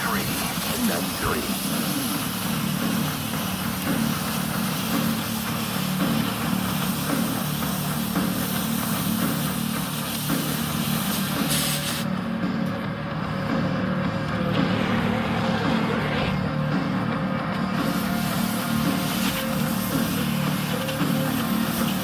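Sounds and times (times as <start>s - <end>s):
welding arc crackling and hissing: 0.0s - 12.8s, 14.4s - 22.0s
engine running hum: 0.0s - 22.0s.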